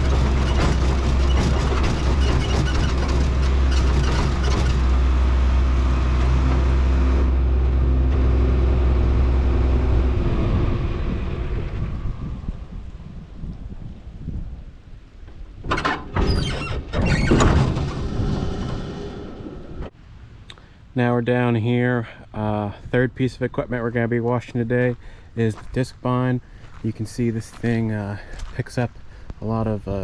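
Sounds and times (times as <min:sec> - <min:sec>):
rattling: 0:00.0 - 0:05.2
tractor engine running: 0:00.0 - 0:12.8.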